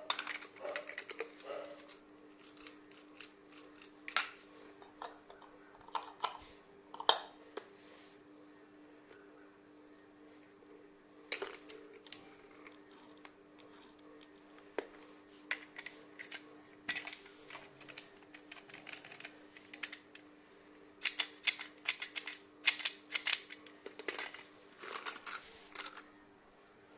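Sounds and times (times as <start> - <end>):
plastic toys clicking and clattering: 0.0 - 4.4, 5.0 - 6.4, 15.5 - 20.2, 21.0 - 26.1
faint steady hum: 0.0 - 26.9.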